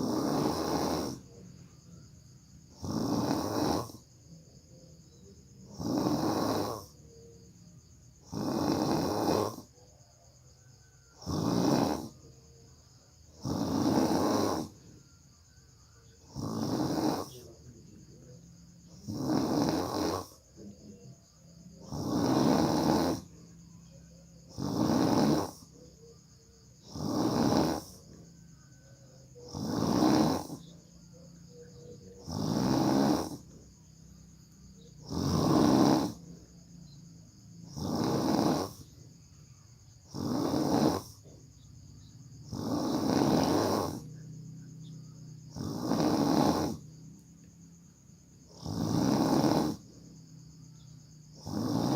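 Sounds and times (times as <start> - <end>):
person snoring heavily: 0.0 - 1.4, 2.6 - 4.1, 5.6 - 7.1, 8.2 - 10.0, 11.1 - 12.4, 13.2 - 14.9, 16.2 - 23.6, 24.4 - 25.8, 26.8 - 28.4, 29.2 - 31.1, 32.1 - 33.7, 34.3 - 36.6, 37.6 - 39.1, 40.0 - 41.4, 42.4 - 44.1, 45.4 - 47.0, 48.4 - 51.9
quiet breathing: 0.0 - 37.3.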